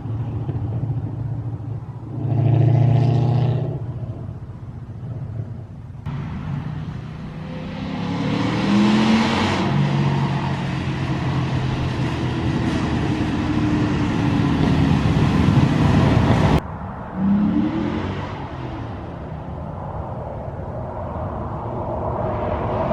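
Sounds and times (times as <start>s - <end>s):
engine rev: 6.1s - 19.4s.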